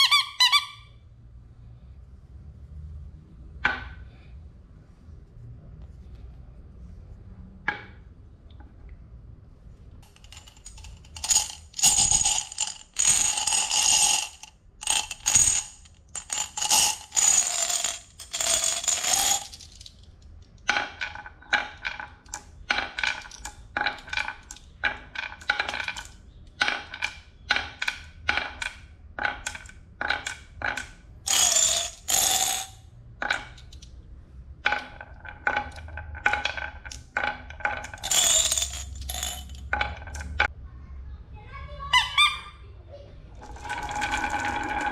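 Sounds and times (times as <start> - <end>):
marbles rattling down wooden run: 10.0 - 33.8, 34.6 - 40.5, 43.4 - 44.9.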